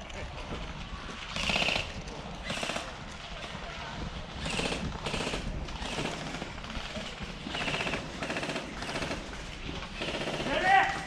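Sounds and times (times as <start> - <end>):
airsoft guns firing bursts: 1.3 - 3.6, 4.3 - 11.0.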